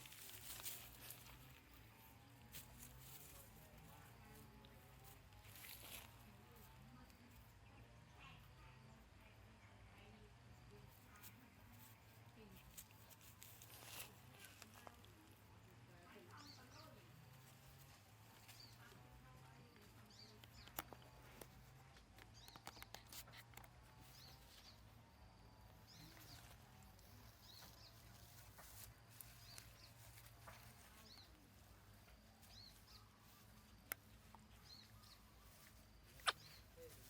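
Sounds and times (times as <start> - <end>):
high-pitched animal chirps: 36.2 - 36.9.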